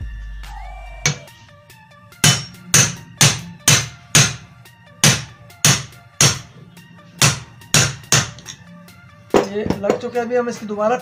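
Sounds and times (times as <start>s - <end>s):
background music: 0.0s - 11.0s
hammer tapping metal: 1.1s - 1.3s, 2.2s - 6.5s, 7.2s - 8.6s.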